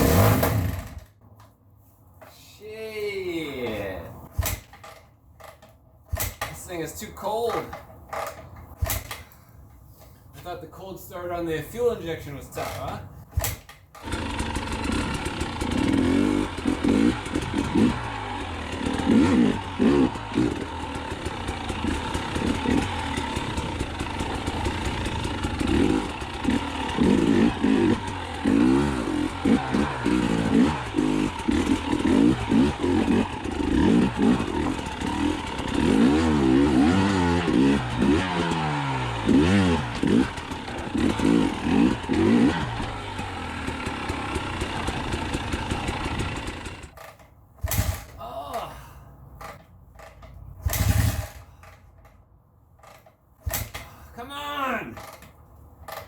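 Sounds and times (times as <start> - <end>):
dirt bike engine revving: 0.0 - 1.1, 12.6 - 48.7, 49.4 - 51.8
man talking: 2.3 - 4.2, 6.6 - 7.8, 10.4 - 13.1, 54.1 - 55.0.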